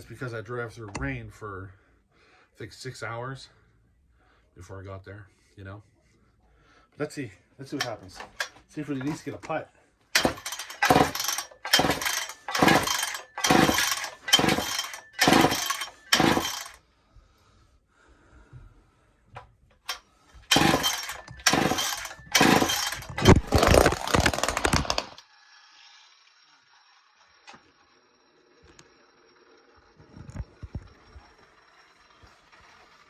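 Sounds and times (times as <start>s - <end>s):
chainsaw recoil starter pulls: 7.7s - 9.5s, 10.2s - 16.8s, 19.8s - 25.2s.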